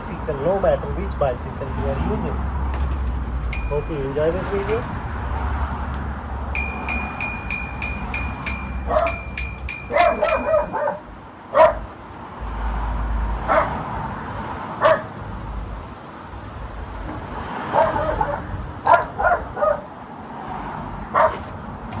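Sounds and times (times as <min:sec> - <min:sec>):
dog barking: 0:08.9 - 0:09.2, 0:09.9 - 0:11.9, 0:13.4 - 0:13.8, 0:14.8 - 0:15.2, 0:17.7 - 0:19.9, 0:21.1 - 0:21.5.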